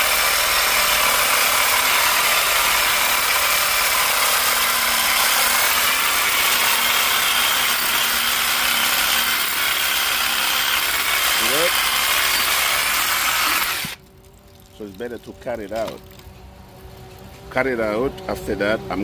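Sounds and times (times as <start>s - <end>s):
pipe cutting machine noise: 0.0s - 19.0s.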